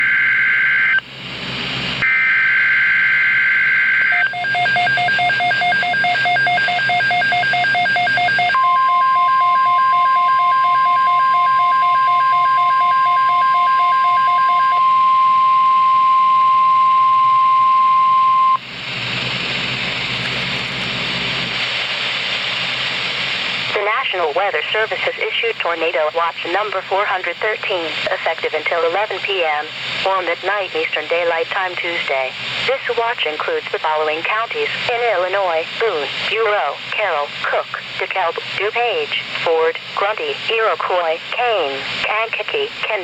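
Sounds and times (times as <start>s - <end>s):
rapid pulsing beep: 2.0s - 18.6s
radio hiss: 21.2s - 43.0s.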